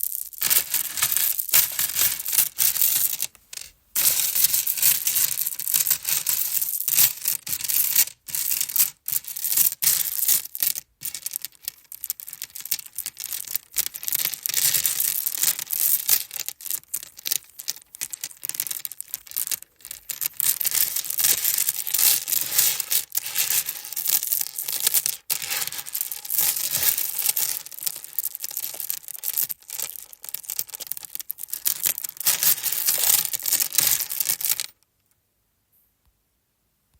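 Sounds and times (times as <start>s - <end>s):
necklace chains rattling and jingling: 0.0s - 34.7s.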